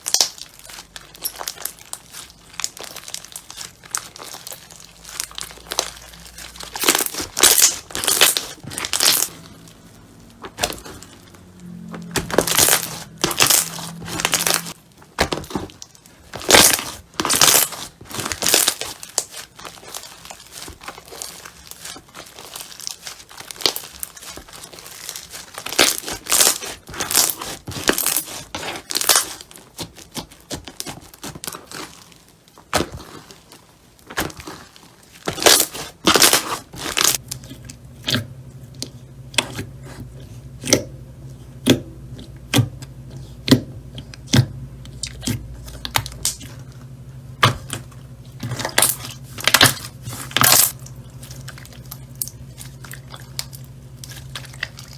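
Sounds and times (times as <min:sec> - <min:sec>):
slime popping: 0:00.0 - 0:09.6, 0:12.1 - 0:31.9
low steady hum: 0:00.0 - 0:30.0, 0:30.6 - 0:54.9
slime crackling and tearing: 0:00.0 - 0:39.6, 0:48.4 - 0:54.9.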